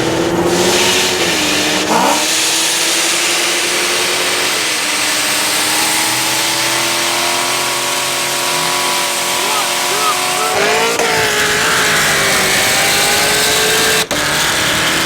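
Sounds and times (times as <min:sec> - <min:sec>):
car engine running: 0:03.0 - 0:15.0.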